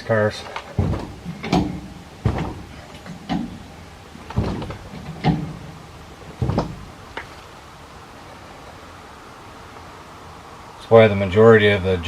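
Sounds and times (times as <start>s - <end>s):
car jack mechanical clunks: 0.4s - 7.7s.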